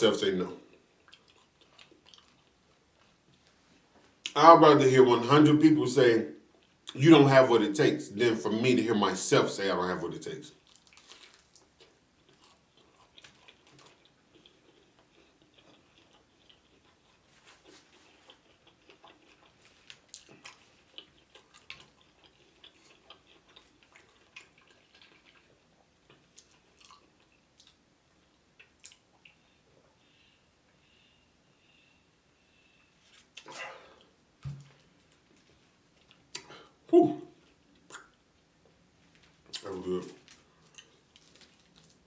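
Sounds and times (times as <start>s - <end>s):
chewing with soft crunches: 0.5s - 4.4s, 10.5s - 31.8s, 32.6s - 42.0s
mouth clicks: 36.3s - 37.2s.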